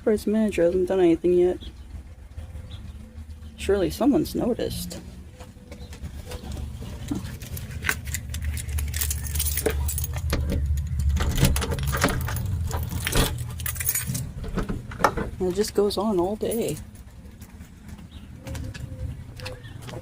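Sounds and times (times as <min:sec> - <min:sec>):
small clicks and rattles: 0:05.7 - 0:20.0.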